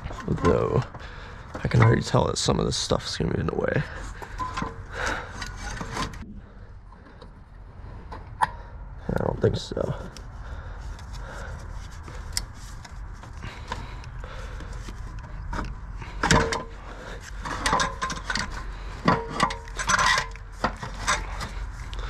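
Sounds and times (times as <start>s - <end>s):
metal pipe knocking and scraping: 0.0s - 2.5s, 3.9s - 6.3s, 14.7s - 22.0s.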